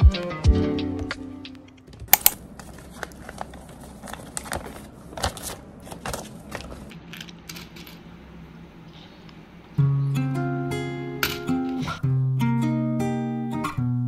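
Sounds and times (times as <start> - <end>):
faint low room hum: 2.0 - 12.6
small sharp clicks and crinkles: 2.2 - 4.7.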